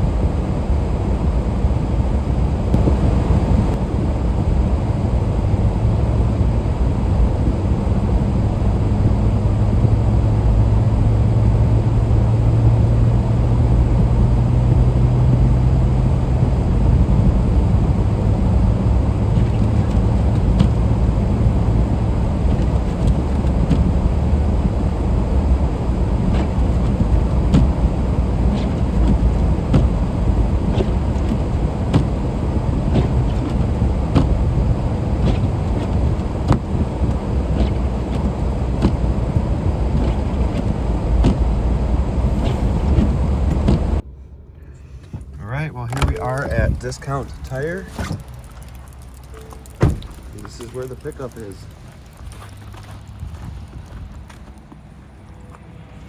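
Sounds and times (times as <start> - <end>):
car engine and road rumble: 0.0 - 56.0
low hum: 0.0 - 56.0.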